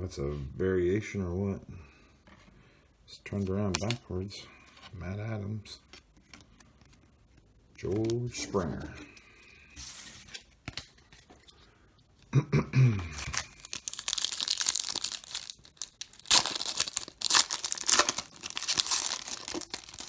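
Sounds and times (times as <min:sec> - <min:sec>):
plastic wrapper tearing and crinkling: 0:13.2 - 0:20.0.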